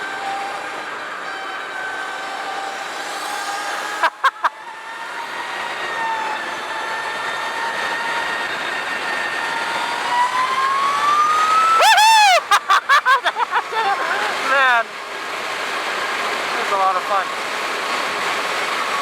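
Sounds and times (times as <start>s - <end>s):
electric motorcycle motor whine: 0.0s - 11.8s.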